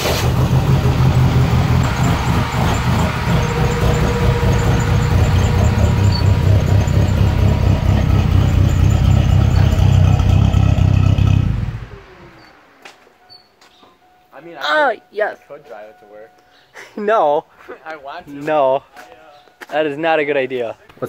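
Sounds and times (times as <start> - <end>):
car engine exhaust rumble: 0.0 - 13.8.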